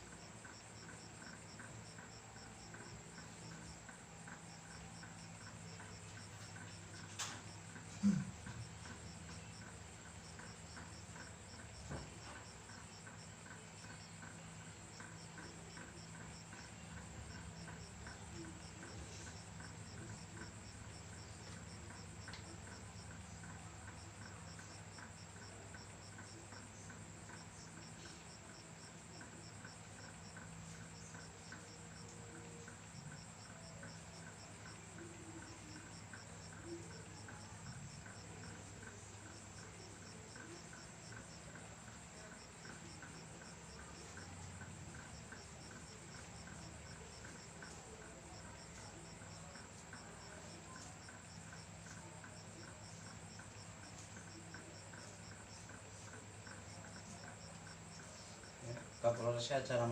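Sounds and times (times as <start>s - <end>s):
cricket chirping: 0.0s - 59.9s.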